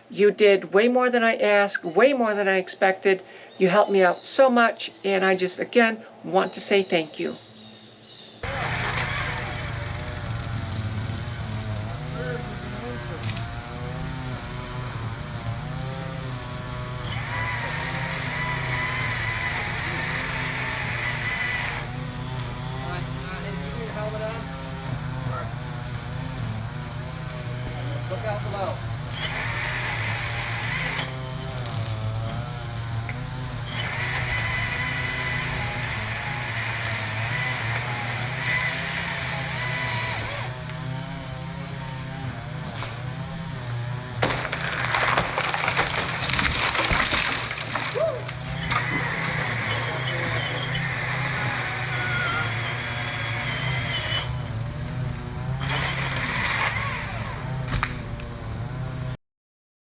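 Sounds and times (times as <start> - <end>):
low engine hum: 8.4 - 46.6
high-pitched machine whine: 48.4 - 54.6.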